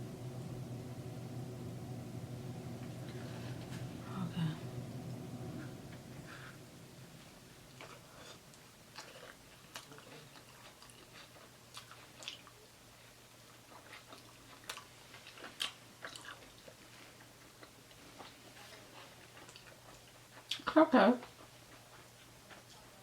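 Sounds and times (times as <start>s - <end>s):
person chewing food: 7.6s - 20.6s.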